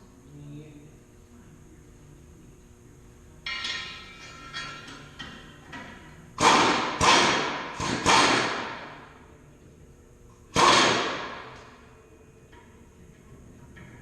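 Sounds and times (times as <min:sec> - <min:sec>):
hammer striking steel: 0:03.5 - 0:09.0, 0:10.5 - 0:11.6.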